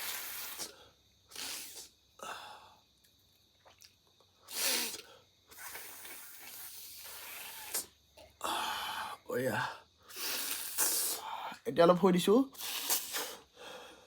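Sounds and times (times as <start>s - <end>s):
person sniffing: 0.0s - 2.0s, 4.4s - 7.9s, 10.0s - 11.5s, 12.5s - 13.8s
person sneezing: 1.3s - 1.9s, 4.5s - 6.0s, 12.6s - 13.4s
person breathing noisily: 4.5s - 11.6s, 12.6s - 14.0s.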